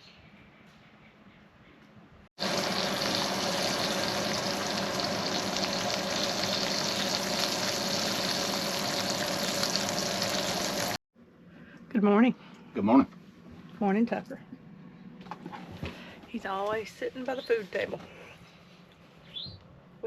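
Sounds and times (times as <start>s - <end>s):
running water: 2.4s - 11.0s.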